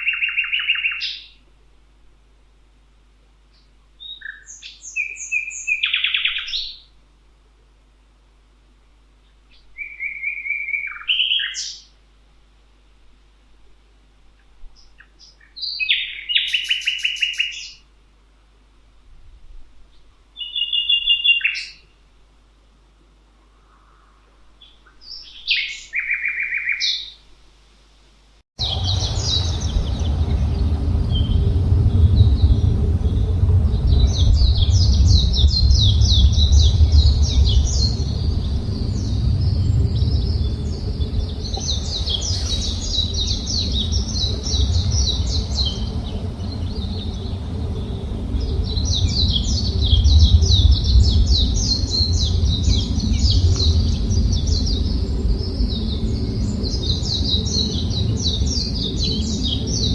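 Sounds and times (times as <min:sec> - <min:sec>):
small birds chirping: 0:28.6 - 0:59.9
steady low rumble: 0:28.6 - 0:59.9.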